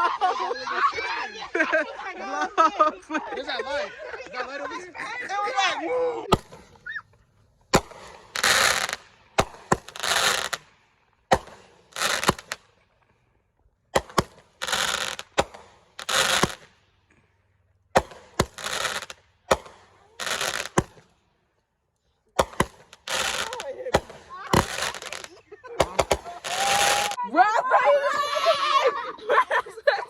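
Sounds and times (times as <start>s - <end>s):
fireworks hissing whooshes: 7.7s - 12.7s, 14.0s - 16.9s, 18.0s - 21.1s, 22.4s - 27.2s
fireworks cracks and pops: 7.7s - 12.8s, 13.9s - 16.8s, 18.0s - 21.1s, 22.3s - 27.2s.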